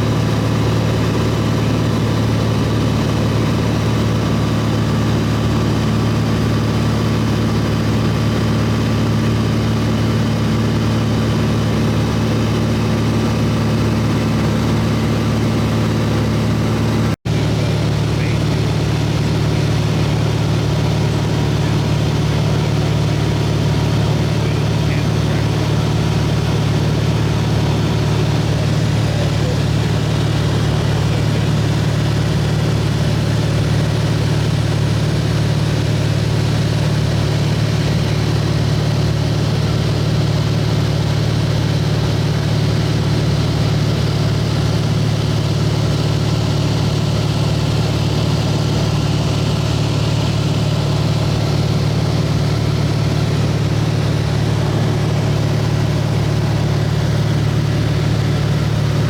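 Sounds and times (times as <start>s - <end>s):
aircraft engine droning: 0.0s - 59.0s.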